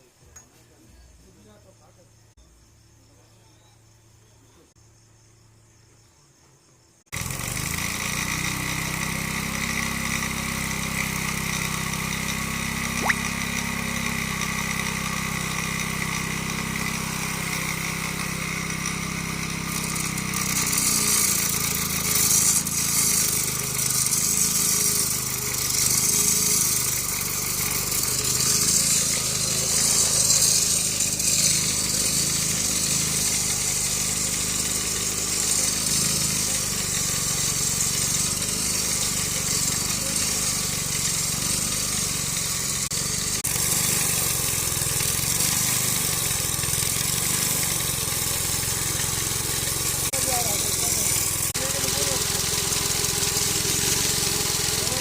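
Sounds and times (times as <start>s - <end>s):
small engine humming and whining: 7.1s - 55.0s.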